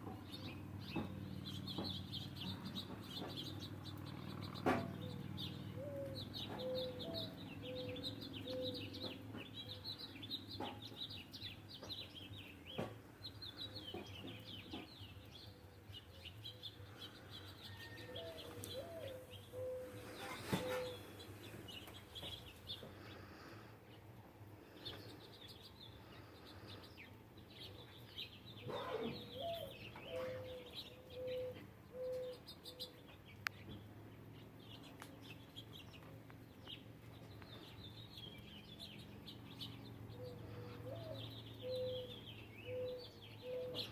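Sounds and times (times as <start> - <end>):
small birds chirping: 0.0 - 43.9
low rising bird call: 4.9 - 9.0, 17.4 - 21.7, 40.2 - 43.9.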